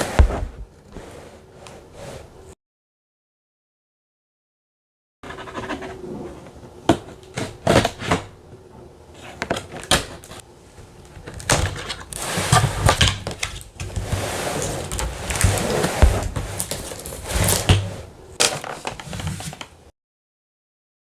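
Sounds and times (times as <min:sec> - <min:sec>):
plastic and cardboard rustling: 0:09.1 - 0:19.9
packaging clicks and knocks: 0:18.4 - 0:19.7.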